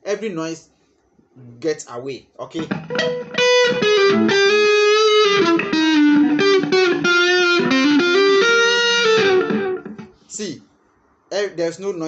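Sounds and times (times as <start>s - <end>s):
distorted electric guitar lead: 2.6s - 10.2s.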